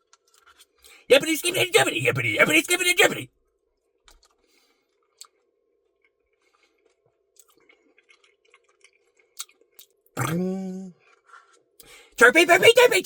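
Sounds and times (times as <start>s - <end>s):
person chewing: 4.1s - 11.7s.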